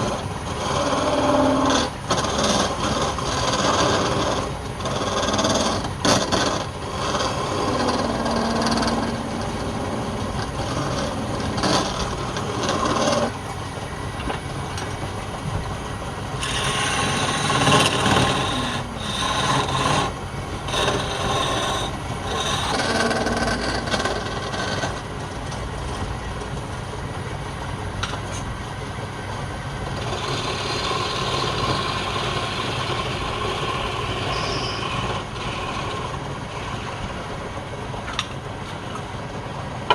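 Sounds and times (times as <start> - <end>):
wood scraping and grinding: 0.0 - 13.4, 16.3 - 25.1
woodworking machine running: 0.0 - 39.9.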